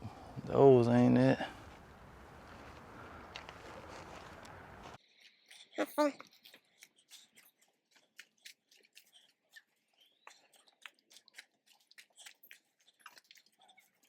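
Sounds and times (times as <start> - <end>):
faint crunches and clicks: 2.4 - 5.0.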